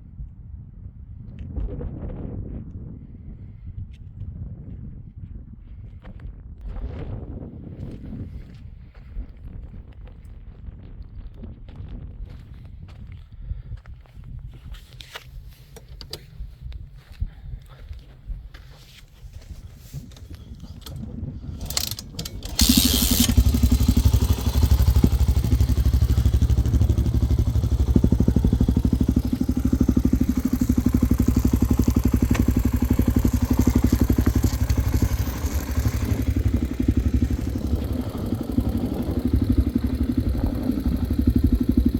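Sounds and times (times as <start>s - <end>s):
dirt bike engine running: 20.0s - 41.9s.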